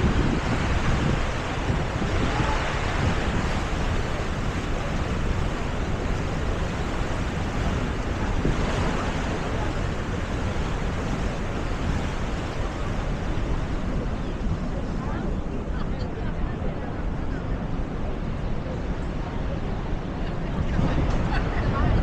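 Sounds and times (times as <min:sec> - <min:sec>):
waterfall rushing: 0:00.0 - 0:16.3
wind buffeting microphone: 0:00.0 - 0:22.0.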